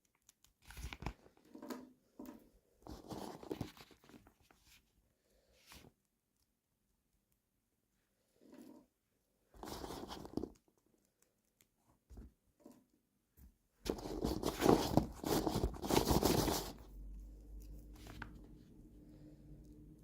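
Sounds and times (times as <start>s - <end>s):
faint steady hum: 16.4s - 20.0s.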